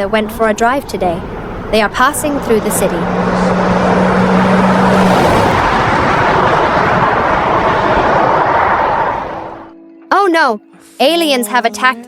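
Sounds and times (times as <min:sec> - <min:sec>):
low engine hum: 0:00.0 - 0:09.7
city traffic: 0:00.0 - 0:09.8.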